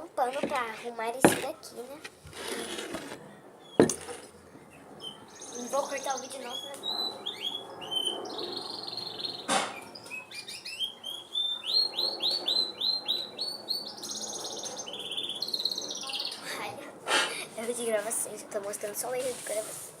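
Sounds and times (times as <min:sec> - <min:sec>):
small bird chirping and trilling: 0:04.8 - 0:16.4.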